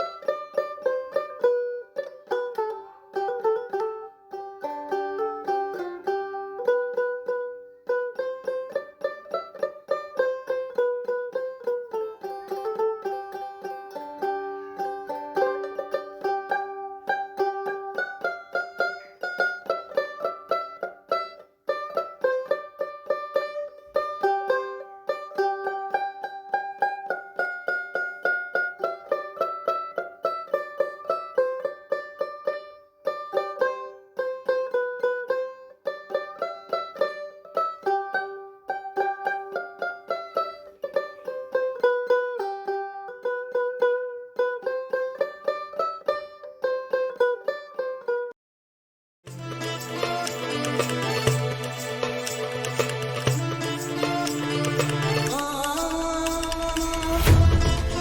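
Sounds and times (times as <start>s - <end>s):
fast plucked-string tune: 0.0s - 28.1s, 49.3s - 58.0s.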